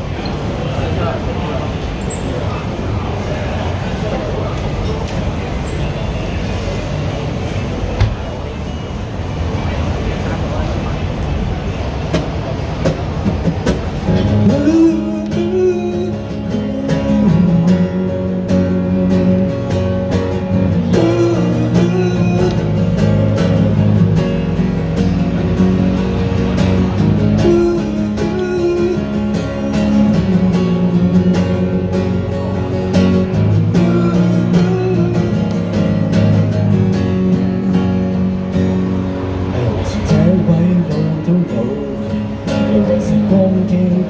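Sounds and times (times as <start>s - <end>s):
acoustic guitar strumming: 12.1s - 44.0s.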